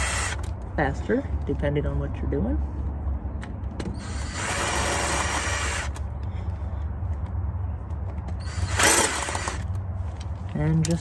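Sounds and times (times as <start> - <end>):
power tool spinning bolts: 0.0 - 0.5, 4.0 - 6.0, 8.4 - 9.7.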